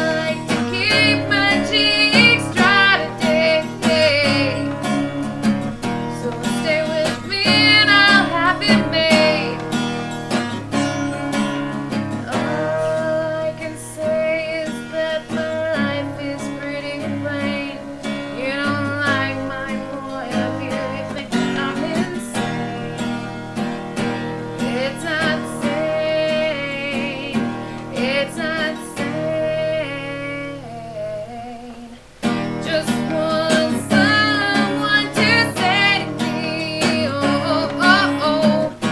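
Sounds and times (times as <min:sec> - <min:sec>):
person singing: 0:00.0 - 0:11.0, 0:12.0 - 0:23.3, 0:24.0 - 0:38.9
strummed acoustic guitar: 0:00.0 - 0:38.9.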